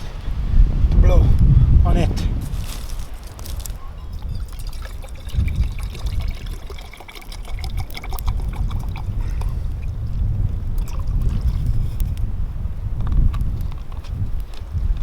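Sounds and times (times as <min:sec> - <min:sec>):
wind rumbling on microphone: 0:00.0 - 0:15.0
campfire crackling and popping: 0:01.4 - 0:12.3.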